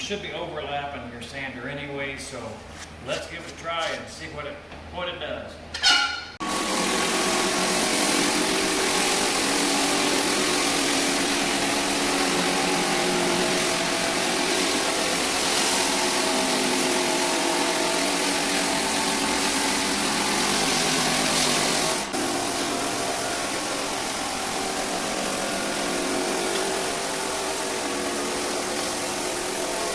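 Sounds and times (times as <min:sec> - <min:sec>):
floor sander humming: 0:06.4 - 0:29.9.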